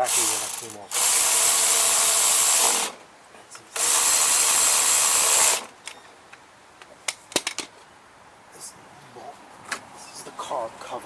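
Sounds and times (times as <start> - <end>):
power tool driving fasteners: 0.0 - 3.0, 3.8 - 6.0.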